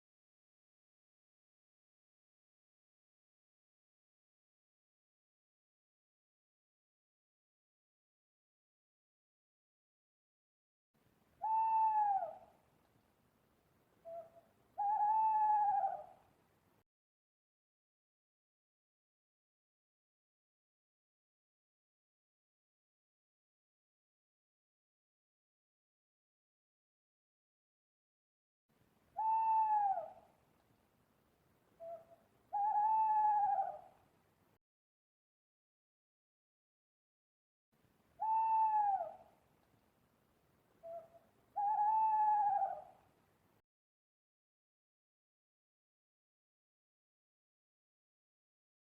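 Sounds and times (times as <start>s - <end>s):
owl hooting: 11.4s - 12.6s, 14.0s - 16.2s, 29.2s - 30.3s, 31.8s - 34.0s, 38.2s - 39.4s, 40.8s - 43.0s.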